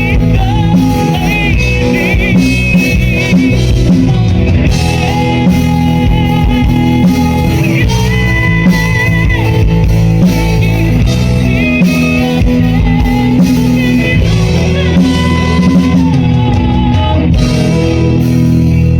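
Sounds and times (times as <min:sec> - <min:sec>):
electric guitar bending notes: 0:00.0 - 0:18.9
rock band playing: 0:00.0 - 0:18.9.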